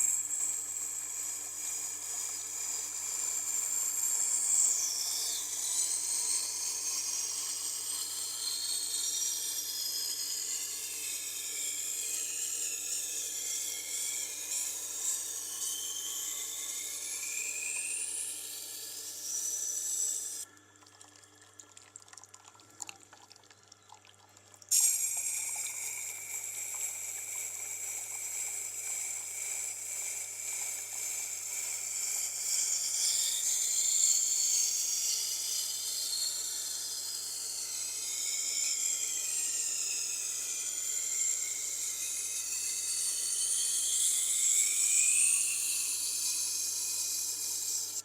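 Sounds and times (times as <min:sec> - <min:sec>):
knife grinding on wet stone: 0:24.7 - 0:35.2.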